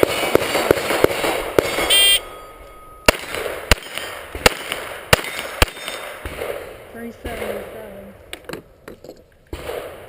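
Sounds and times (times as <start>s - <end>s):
pistol shots hitting steel: 0.0s - 7.6s
shot timer beep: 1.7s - 3.1s.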